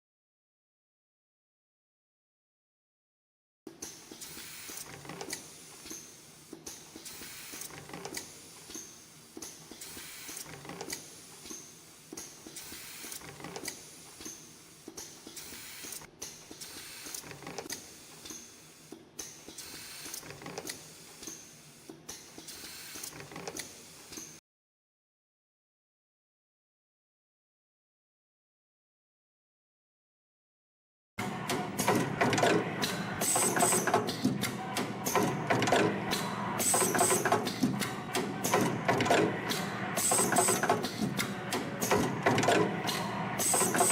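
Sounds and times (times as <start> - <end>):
machine hiss: 3.9 - 24.4, 31.2 - 43.9
machine clicks and ticks: 31.2 - 43.9
spring coiling machine hissing: 31.2 - 43.9.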